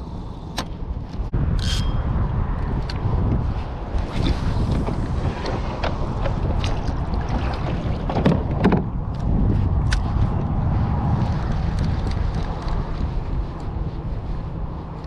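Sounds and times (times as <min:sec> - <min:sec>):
wind buffeting microphone: 0:00.0 - 0:15.0
water splashes: 0:04.0 - 0:08.8.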